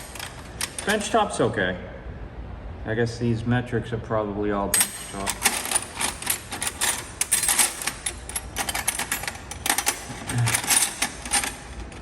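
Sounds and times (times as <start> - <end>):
metal hand tools clinking: 4.8 - 12.0.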